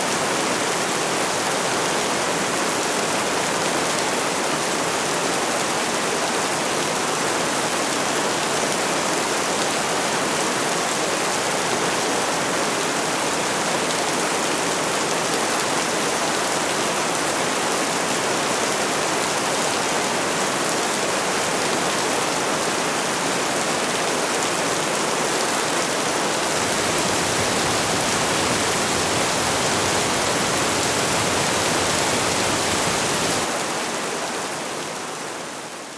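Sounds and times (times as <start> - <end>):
dense rain falling: 0.1 - 35.9.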